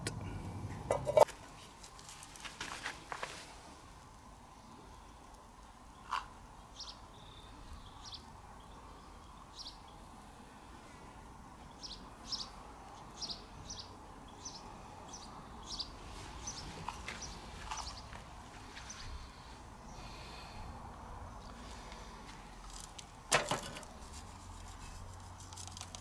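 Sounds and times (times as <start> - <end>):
faint steady background noise: 0.0 - 26.0
birds chirping: 5.8 - 10.2, 11.6 - 20.7.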